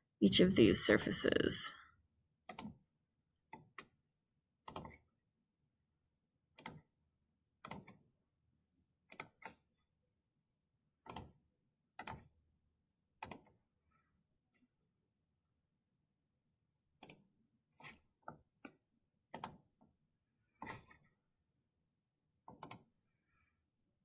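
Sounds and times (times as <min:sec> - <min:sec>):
computer mouse clicking: 0:04.7 - 0:05.0, 0:22.5 - 0:22.9.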